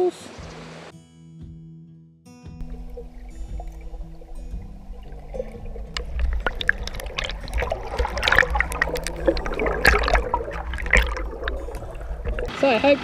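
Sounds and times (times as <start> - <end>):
water splashing over boulders: 2.6 - 13.0.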